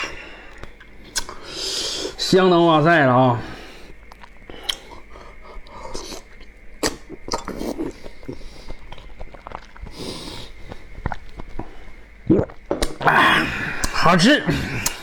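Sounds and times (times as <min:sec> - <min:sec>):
wet clicks and smacks: 0:00.0 - 0:01.4, 0:03.9 - 0:10.0, 0:10.6 - 0:11.7, 0:12.4 - 0:13.1, 0:13.8 - 0:14.2, 0:14.8 - 0:15.0
person chewing: 0:00.0 - 0:02.2, 0:03.7 - 0:15.0.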